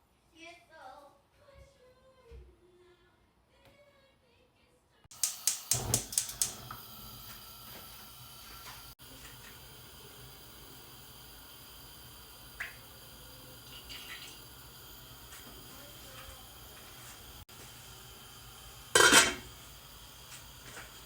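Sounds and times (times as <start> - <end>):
background hiss: 5.1 - 21.0.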